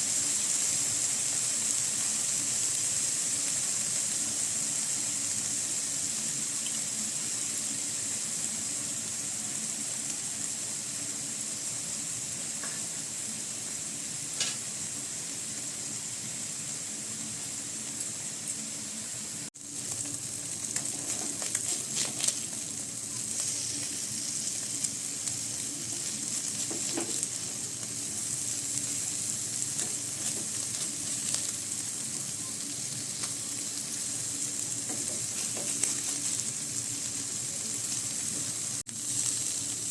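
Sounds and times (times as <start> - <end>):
fish sizzling in hot oil: 0.0 - 39.9
stirring clicks and scrapes in pan: 20.7 - 22.5, 34.9 - 36.5.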